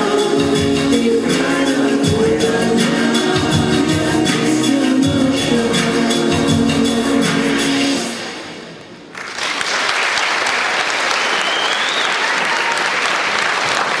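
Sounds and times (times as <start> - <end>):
audience applause: 9.1 - 14.0.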